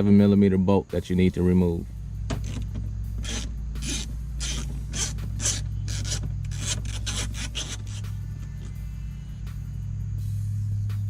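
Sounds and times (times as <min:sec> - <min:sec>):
ratchet clicking: 0:02.3 - 0:08.8.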